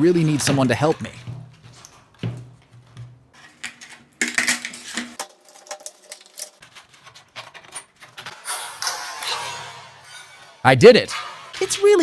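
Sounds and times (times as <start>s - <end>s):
metallic clicking and clinking: 2.6s - 6.7s.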